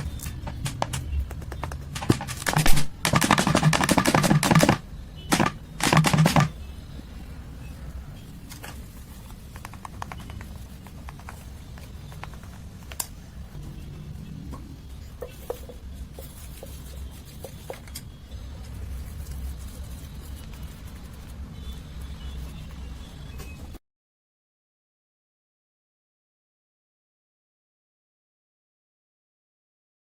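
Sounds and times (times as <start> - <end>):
hard objects clattering: 0.0 - 6.5.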